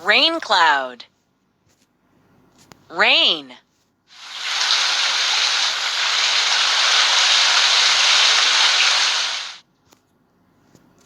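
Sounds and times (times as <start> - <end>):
heavy rainfall: 4.2 - 9.6.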